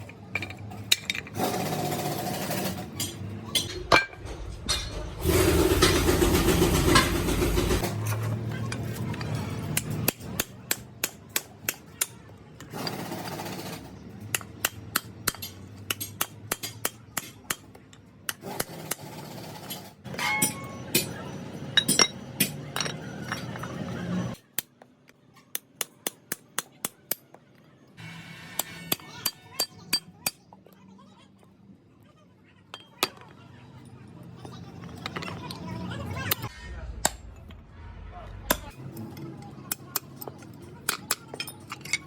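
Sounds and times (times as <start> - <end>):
hammer clinking on metal: 20.1 - 21.2, 21.8 - 23.6.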